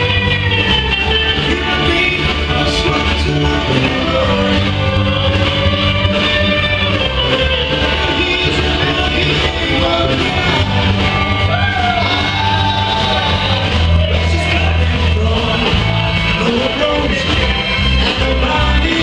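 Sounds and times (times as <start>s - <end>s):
person singing: 0.0s - 19.0s
rock band playing live: 0.0s - 19.0s.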